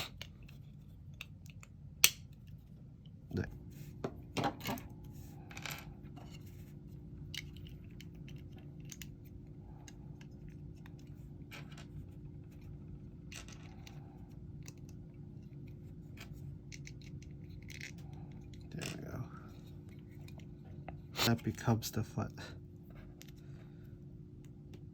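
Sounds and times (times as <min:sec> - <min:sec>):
plastic parts clicking and snapping: 0:00.0 - 0:02.6, 0:07.3 - 0:11.8
faint steady hum: 0:00.0 - 0:24.9.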